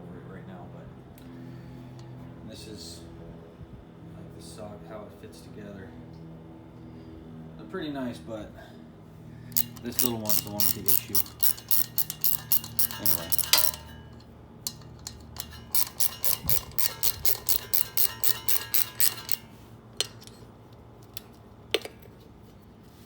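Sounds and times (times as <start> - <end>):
ratchet wrench clicking: 9.5 - 20.4.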